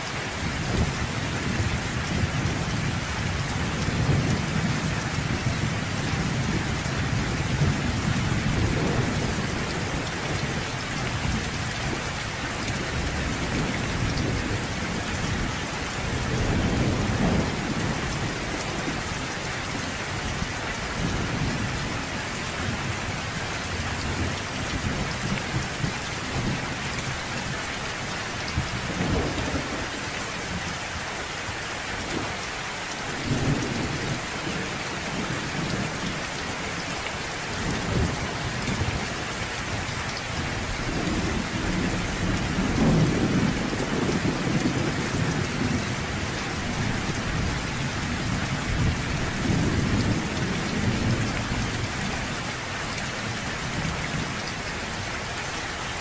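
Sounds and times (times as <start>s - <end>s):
steady rain falling: 0.0s - 56.0s
thunder rumbling: 0.6s - 12.0s, 12.7s - 19.0s, 28.5s - 30.6s, 40.4s - 51.9s.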